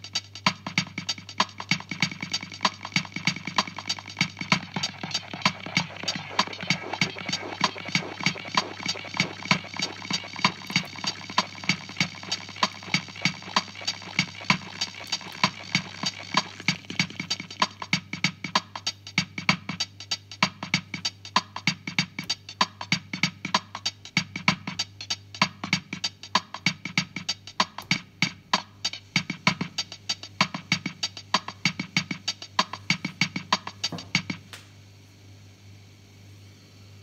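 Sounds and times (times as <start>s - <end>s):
drum machine bossa nova rhythm: 0.0s - 34.6s
steady low hum: 1.7s - 17.8s.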